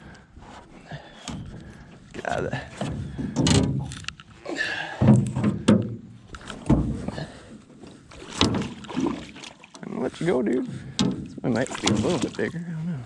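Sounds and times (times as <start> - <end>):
thunks against boat hull: 2.8 - 3.9, 5.0 - 7.1, 8.3 - 9.1, 10.7 - 12.4.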